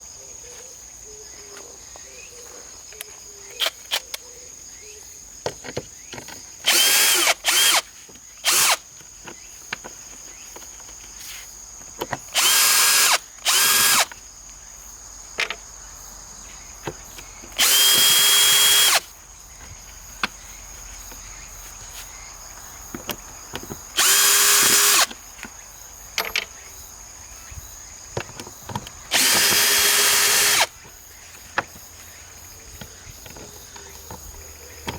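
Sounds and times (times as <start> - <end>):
cicadas buzzing: 0.0 - 34.9
power drill running: 6.7 - 8.8, 12.4 - 14.1, 17.6 - 19.0, 24.0 - 25.1, 29.1 - 30.7.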